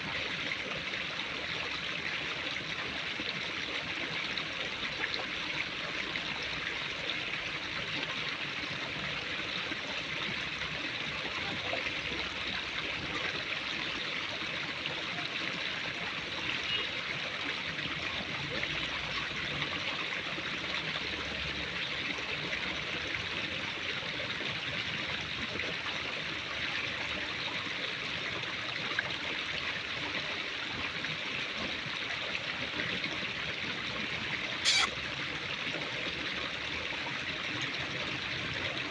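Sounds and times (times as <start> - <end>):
running water rushing: 32.8 - 38.9.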